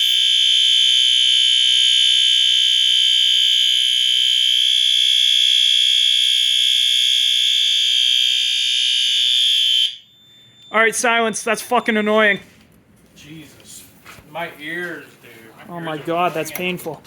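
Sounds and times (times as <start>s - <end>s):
fire alarm horn tone: 0.0s - 12.6s.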